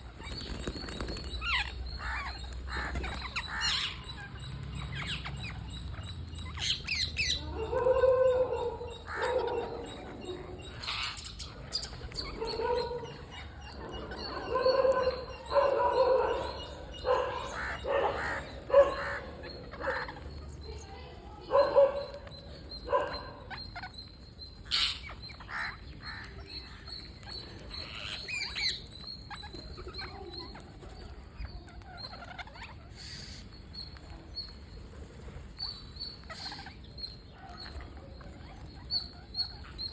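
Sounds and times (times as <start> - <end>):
parrots squawking: 0.1 - 20.5, 24.6 - 30.2.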